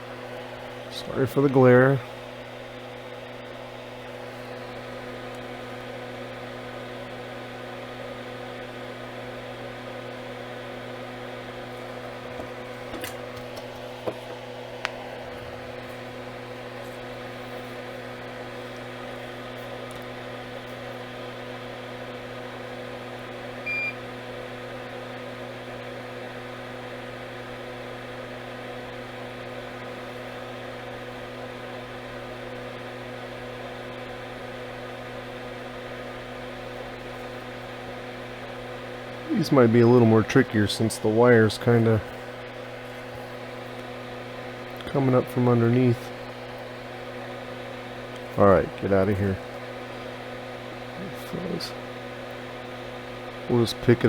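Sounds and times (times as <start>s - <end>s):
electrical equipment hum: 0.0s - 54.0s.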